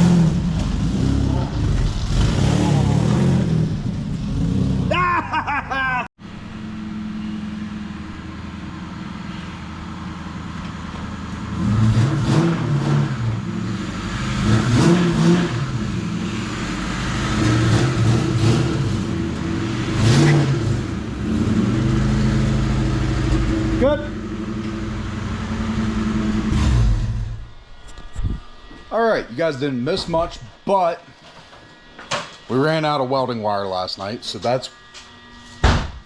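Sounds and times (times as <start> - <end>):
vehicle engine revving: 0.0 - 5.0, 6.3 - 28.6.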